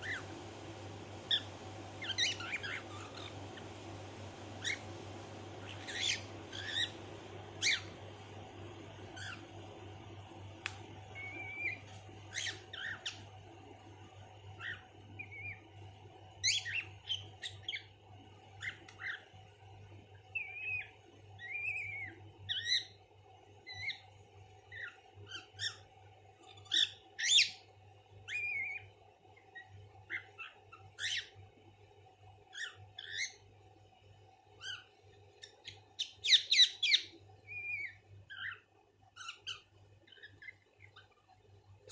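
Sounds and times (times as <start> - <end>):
cockatiel squawking and chirping: 0.0 - 0.4, 1.3 - 3.7, 4.6 - 4.9, 5.6 - 8.0, 9.1 - 9.5, 11.1 - 13.3, 14.6 - 15.7, 16.4 - 17.9, 18.6 - 19.3, 20.2 - 23.0, 23.6 - 31.4, 32.5 - 33.5, 34.6 - 41.2
steady low hum: 0.0 - 32.6.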